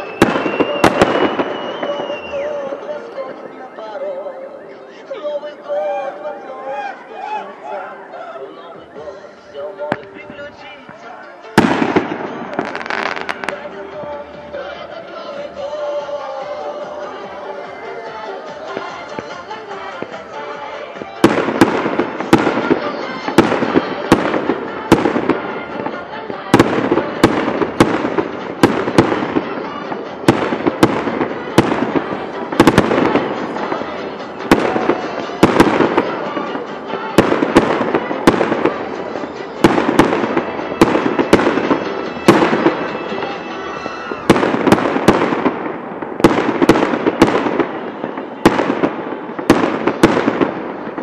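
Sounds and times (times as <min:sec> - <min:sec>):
fireworks crackle and hiss: 0:00.0 - 0:02.6, 0:11.6 - 0:13.7
fireworks bangs: 0:00.0 - 0:05.3, 0:09.4 - 0:51.0.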